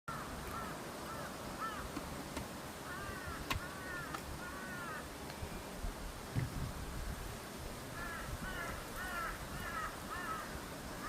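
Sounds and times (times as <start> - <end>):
crows cawing: 0.1 - 1.9, 2.8 - 5.1, 8.0 - 10.6
steady outdoor hiss: 0.1 - 11.0.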